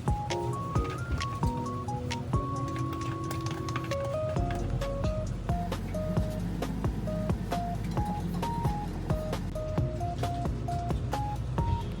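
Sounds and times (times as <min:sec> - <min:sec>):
soft kick drum beat: 0:00.0 - 0:01.7, 0:04.4 - 0:12.0
simple melody of held notes: 0:00.0 - 0:12.0.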